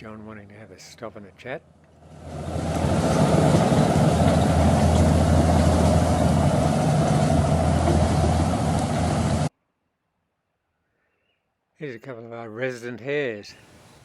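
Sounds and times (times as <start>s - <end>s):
diesel engine running: 1.9s - 9.5s.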